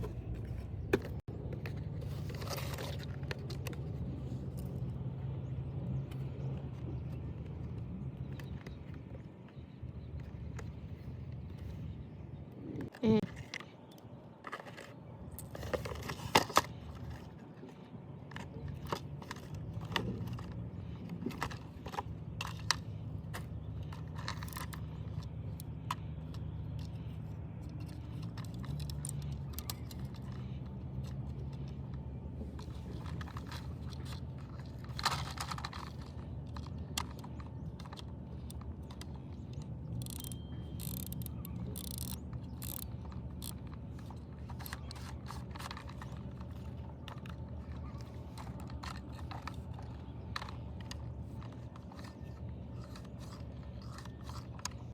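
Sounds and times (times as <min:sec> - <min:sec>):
plastic parts clicking and rattling: 0:00.0 - 0:12.0, 0:12.8 - 0:54.9
small motor humming: 0:39.9 - 0:43.6.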